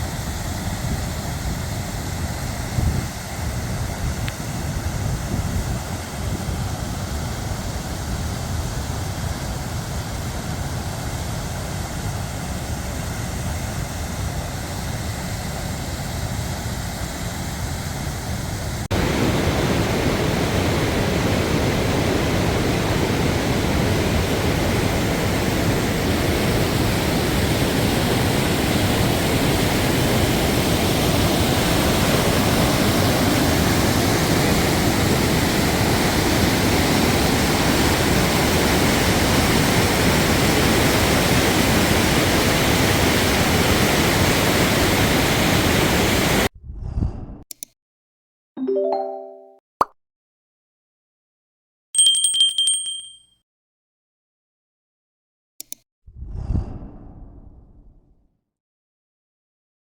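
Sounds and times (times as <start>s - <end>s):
floodwater rushing: 18.9s - 46.5s.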